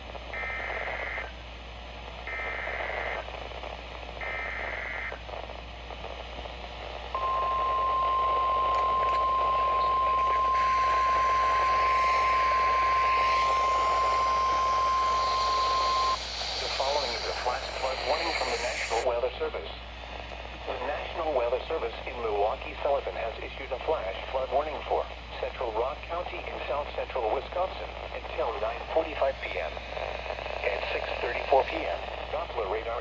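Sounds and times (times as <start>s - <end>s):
static hiss: 2.2s - 5.2s, 6.2s - 19.1s, 25.4s - 33.0s
short buzzy data bursts: 7.2s - 19.0s
steady single-pitch alarm tone: 7.2s - 19.0s.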